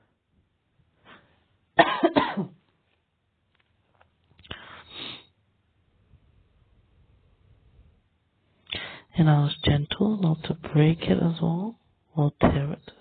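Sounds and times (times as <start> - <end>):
person coughing: 1.8 - 2.6.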